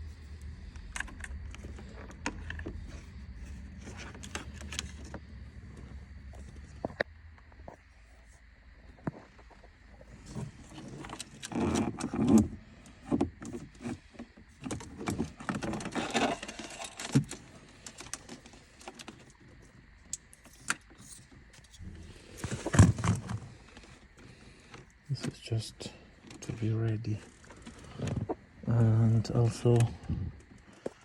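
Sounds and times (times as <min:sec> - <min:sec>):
rattling rustling and clicking: 0:10.2 - 0:19.4.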